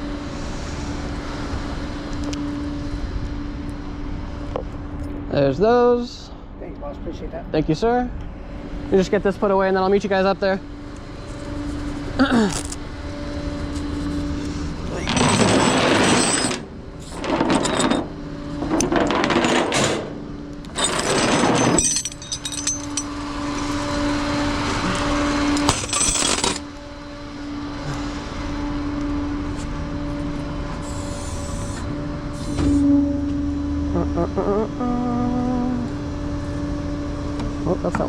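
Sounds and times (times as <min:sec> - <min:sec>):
tow truck mechanical hum: 0:10.6 - 0:37.8
metal clattering and jingling: 0:15.0 - 0:20.1, 0:20.8 - 0:23.8, 0:25.7 - 0:26.6.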